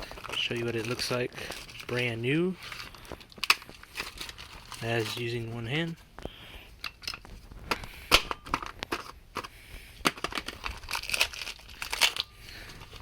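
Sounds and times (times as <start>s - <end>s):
plastic packaging crinkling: 0.0s - 6.4s, 10.1s - 13.0s.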